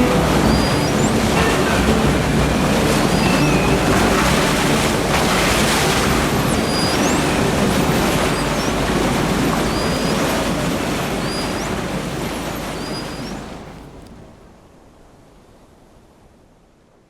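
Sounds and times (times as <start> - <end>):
loud rushing noise: 0.0 - 10.7
faint high whistling sweeps: 0.0 - 13.5.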